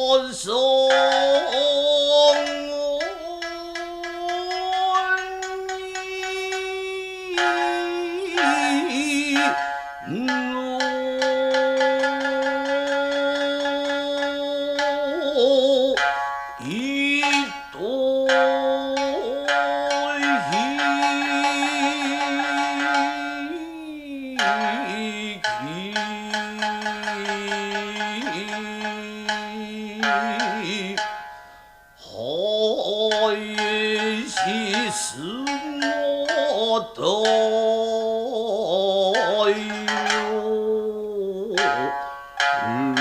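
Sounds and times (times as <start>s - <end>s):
shamisen plucking: 0.0s - 43.0s
held wavering melodic line: 1.0s - 25.9s, 39.2s - 43.0s.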